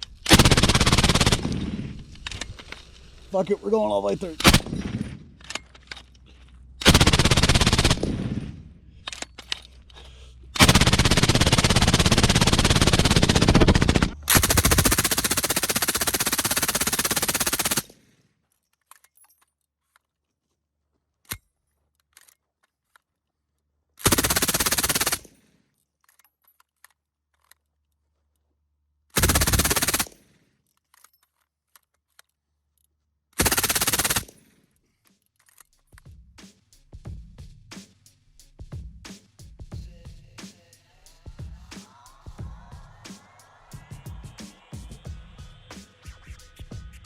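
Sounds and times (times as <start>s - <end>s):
suppressed machine gun firing: 0.2s - 2.6s, 4.4s - 5.5s, 6.8s - 8.8s, 10.6s - 18.0s, 24.0s - 25.3s, 29.2s - 30.2s, 33.4s - 34.4s.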